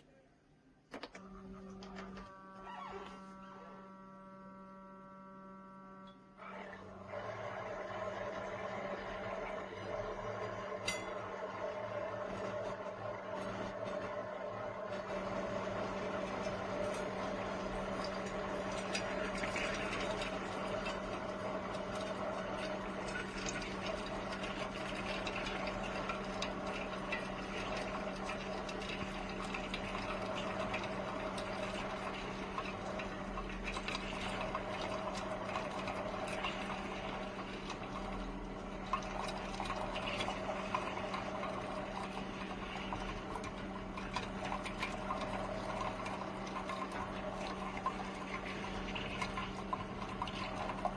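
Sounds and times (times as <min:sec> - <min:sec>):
coffee maker humming: 0:01.0 - 0:50.9
water crackling and gurgling: 0:14.9 - 0:50.9.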